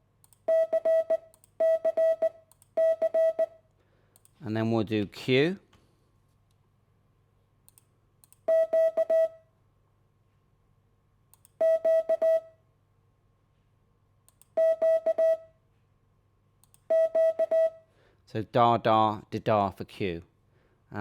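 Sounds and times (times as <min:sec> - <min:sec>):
morse code beeps: 0:00.5 - 0:03.6, 0:08.5 - 0:09.4, 0:11.6 - 0:12.5, 0:14.6 - 0:15.5, 0:16.9 - 0:17.8.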